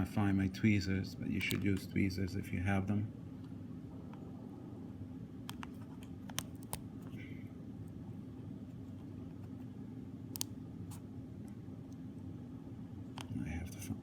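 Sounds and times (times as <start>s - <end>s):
steady low hum: 0.0s - 14.0s
small sharp handling clicks: 5.5s - 7.2s, 10.3s - 10.6s.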